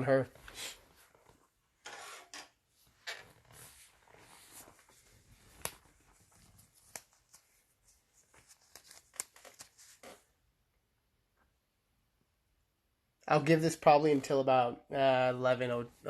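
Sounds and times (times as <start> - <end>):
faint rustling handling noises: 2.8 - 10.3.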